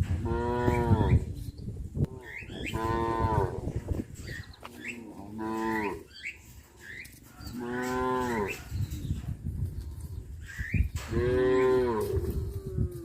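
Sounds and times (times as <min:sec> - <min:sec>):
cattle mooing: 0:02.2 - 0:03.6, 0:05.1 - 0:06.1, 0:07.5 - 0:08.6, 0:11.0 - 0:12.4.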